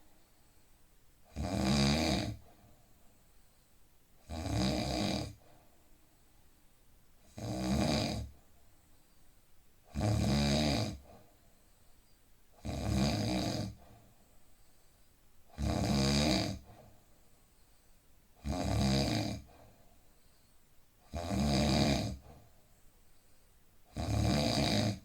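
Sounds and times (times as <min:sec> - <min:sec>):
man snoring: 0:01.3 - 0:02.4, 0:04.2 - 0:05.4, 0:07.3 - 0:08.3, 0:09.9 - 0:11.0, 0:12.6 - 0:13.8, 0:15.6 - 0:16.6, 0:18.4 - 0:19.5, 0:21.1 - 0:22.3, 0:23.9 - 0:25.0.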